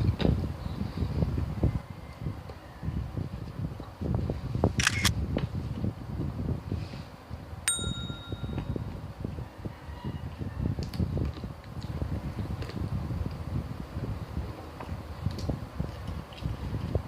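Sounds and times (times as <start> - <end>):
tableware clink: 7.7 - 8.8.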